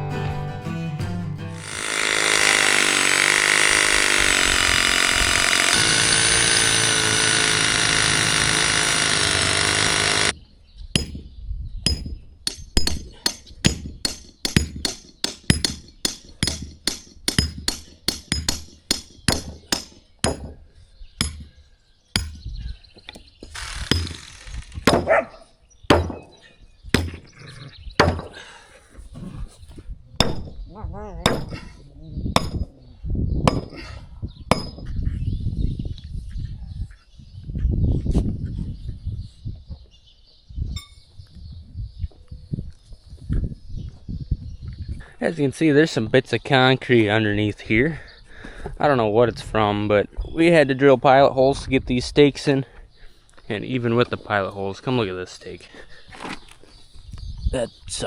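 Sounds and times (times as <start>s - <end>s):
background music: 0.0s - 1.8s
hammer pounding stakes: 1.6s - 10.3s, 11.0s - 11.3s, 11.9s - 20.6s, 21.2s - 21.6s, 22.2s - 25.3s, 25.9s - 26.4s, 27.0s - 27.3s, 28.0s - 28.5s, 30.2s - 30.6s, 31.2s - 31.7s, 32.4s - 32.7s, 33.5s - 33.9s, 34.5s - 34.9s.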